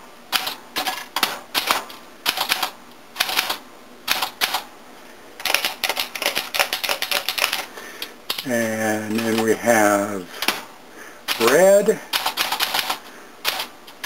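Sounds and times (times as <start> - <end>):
typewriter keys clacking: 5.4 - 7.7, 9.1 - 9.5, 11.3 - 13.7.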